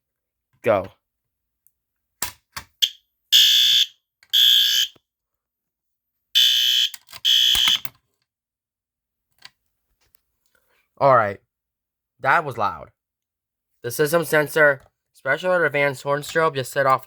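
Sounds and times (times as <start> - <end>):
fire alarm horn blasts: 2.8 - 5.0, 6.4 - 7.9.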